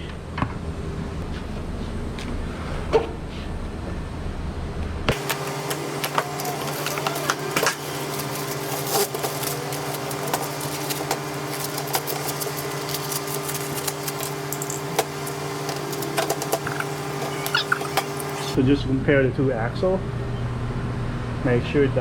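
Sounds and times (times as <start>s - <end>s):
steady mechanical hum: 0.0s - 22.0s.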